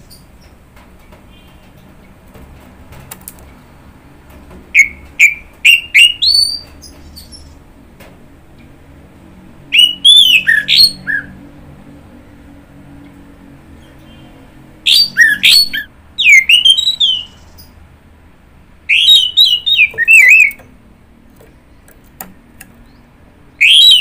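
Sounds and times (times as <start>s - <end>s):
thrush whistling song: 4.8s - 6.6s, 9.7s - 11.3s, 14.9s - 17.8s, 18.9s - 20.6s, 22.9s - 24.0s.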